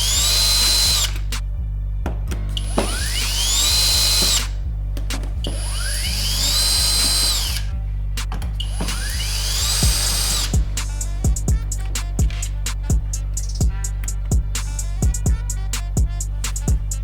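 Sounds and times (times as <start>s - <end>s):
rising whirring sweep: 0.0s - 17.0s
steady electronic bass: 0.0s - 17.0s
drum hits: 9.8s - 15.4s.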